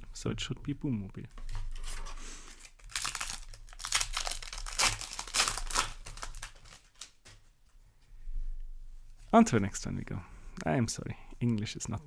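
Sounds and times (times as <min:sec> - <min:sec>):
foil wrapper crinkling: 0:01.5 - 0:07.4.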